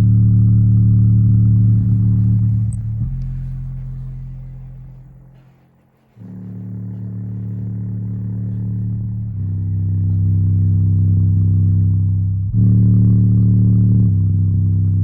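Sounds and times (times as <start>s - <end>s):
subwoofer deep bass note: 0.0s - 15.0s.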